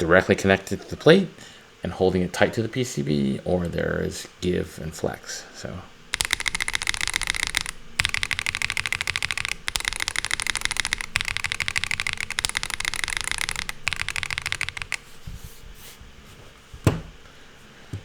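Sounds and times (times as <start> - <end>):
fast typing on keyboard: 6.1 - 15.0.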